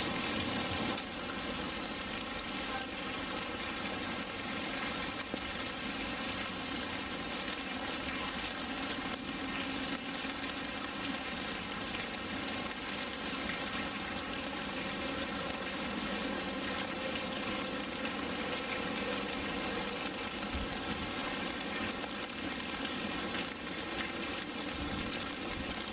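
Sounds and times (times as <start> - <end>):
running water rushing: 0.0 - 25.9.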